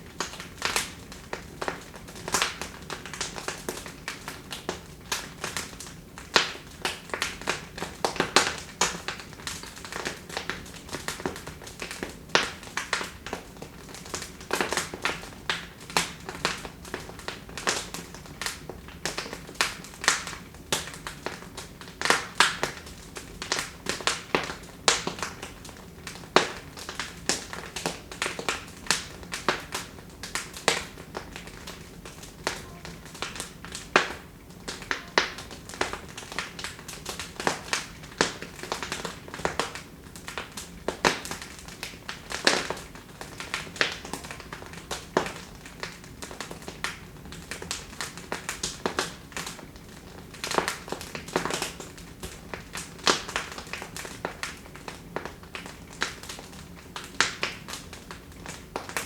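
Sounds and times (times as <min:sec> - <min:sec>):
hiss of burning logs: 0:00.0 - 0:59.0
wood fire crackling: 0:00.0 - 0:59.0.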